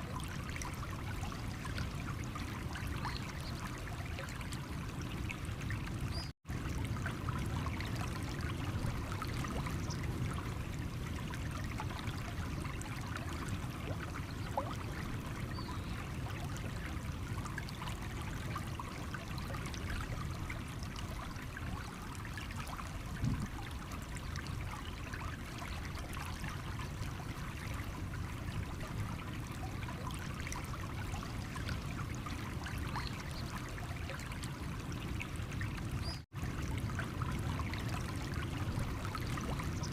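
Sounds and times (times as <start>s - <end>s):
stream water running over stones: 0.0s - 39.9s.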